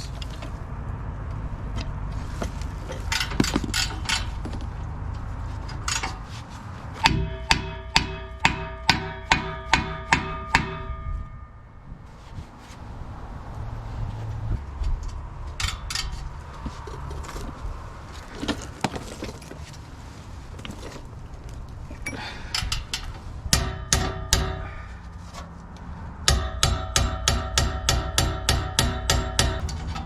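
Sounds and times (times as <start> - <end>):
hammer striking metal: 7.0 - 11.7, 23.5 - 24.8, 26.3 - 29.8.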